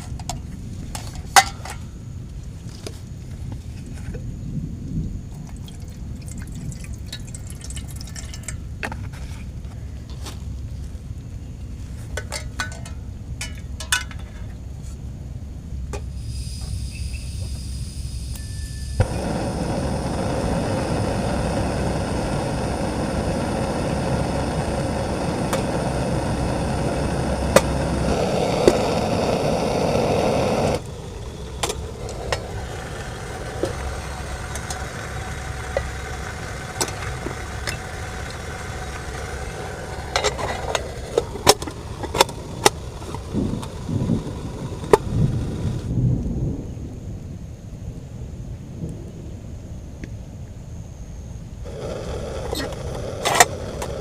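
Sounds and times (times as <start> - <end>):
light rain: 0.0 - 14.2, 18.9 - 50.8, 51.4 - 54.0
heavy rain on a tent: 41.8 - 46.8.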